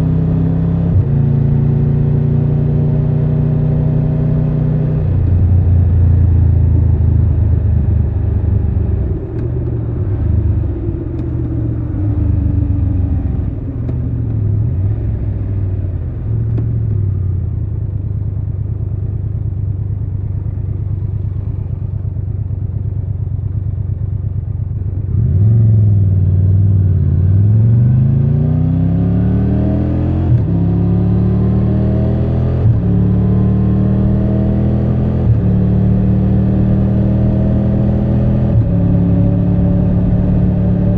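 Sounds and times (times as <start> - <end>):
motorcycle engine revving: 19.8 - 40.9.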